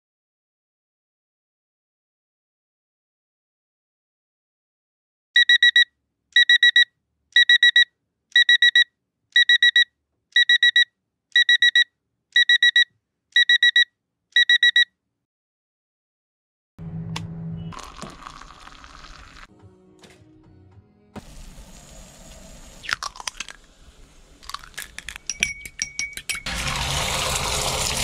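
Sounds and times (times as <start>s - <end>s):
electronic alarm beeping: 5.4s - 14.9s.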